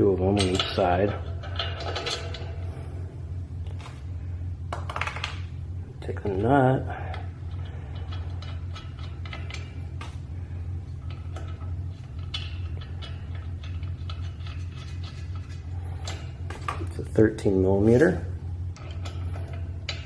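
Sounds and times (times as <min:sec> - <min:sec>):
steady low hum: 0:00.0 - 0:20.0
metal bolts clicking and tapping: 0:00.3 - 0:02.5, 0:11.0 - 0:17.0.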